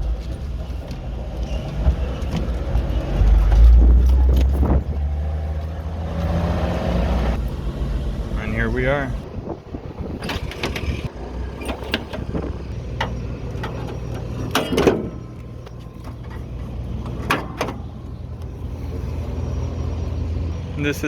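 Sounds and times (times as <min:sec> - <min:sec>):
jeep engine idling: 0:00.0 - 0:21.0
sharp knocks and clanks: 0:10.1 - 0:18.0.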